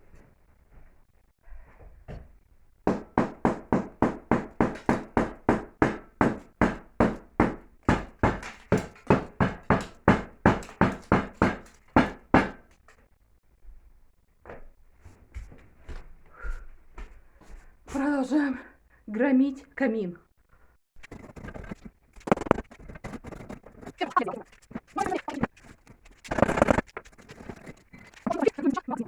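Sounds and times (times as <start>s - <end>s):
hammer striking brickwork: 2.9s - 12.8s.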